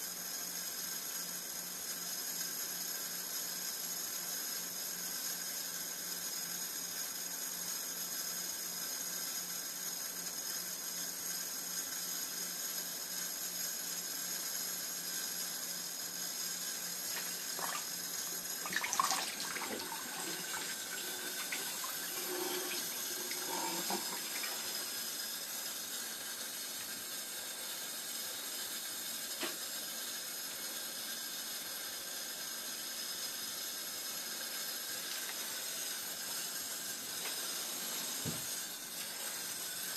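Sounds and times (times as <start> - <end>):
tap water running into sink: 17.0 - 25.0.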